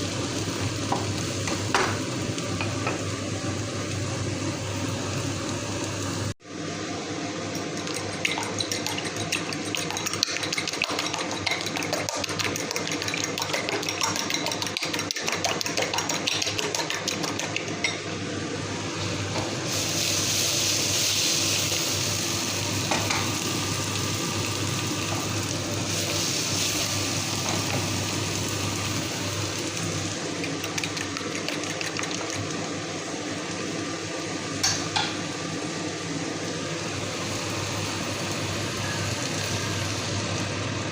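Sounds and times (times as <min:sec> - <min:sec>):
food frying hiss: 0:00.0 - 0:06.4, 0:18.7 - 0:40.9
utensil clicking against bowl: 0:07.7 - 0:17.7, 0:30.4 - 0:32.6.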